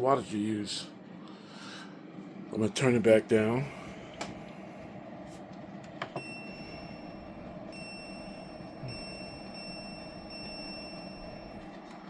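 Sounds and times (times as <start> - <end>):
air conditioner fan hum: 0.0 - 12.0
high-pitched electronic whine: 6.2 - 12.0.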